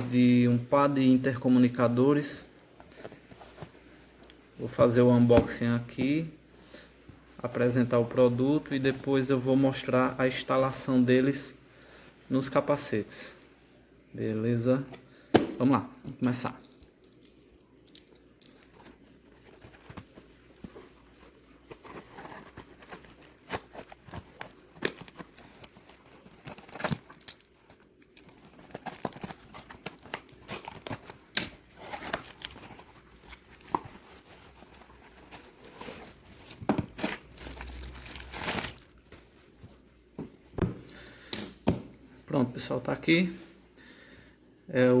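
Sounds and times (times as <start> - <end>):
packaging rustling and crinkling: 16.7 - 39.9
packaging tearing: 21.8 - 33.8, 36.9 - 39.0.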